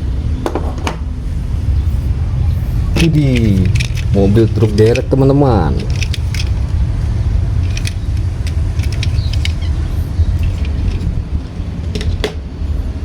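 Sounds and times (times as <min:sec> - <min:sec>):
steady low rumble: 0:00.0 - 0:13.0
plastic toy vehicles clicking: 0:02.9 - 0:11.2, 0:11.8 - 0:12.4.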